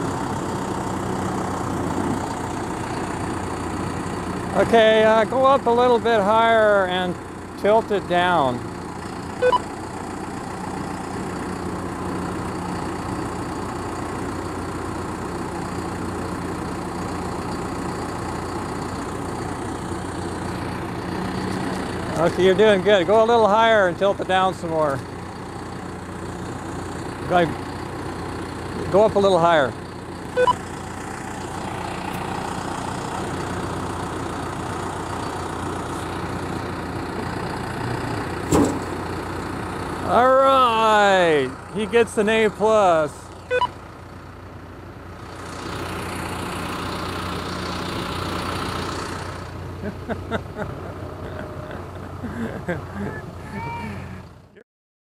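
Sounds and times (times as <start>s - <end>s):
tractor engine running: 0.0s - 54.6s
short tone: 9.4s - 9.7s, 30.4s - 30.6s, 43.5s - 43.8s.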